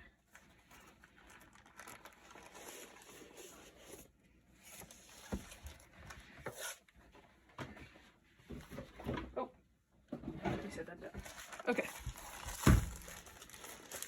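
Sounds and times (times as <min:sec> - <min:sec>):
cardboard packaging rustling: 0:00.3 - 0:06.8, 0:11.2 - 0:14.0.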